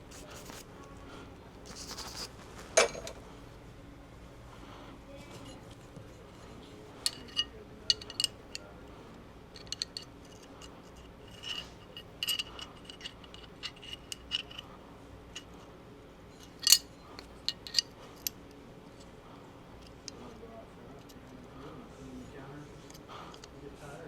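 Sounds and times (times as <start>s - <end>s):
brush scraping metal: 1.6s - 3.2s
small metal parts clicking: 7.0s - 8.7s, 9.5s - 14.7s, 16.3s - 18.4s.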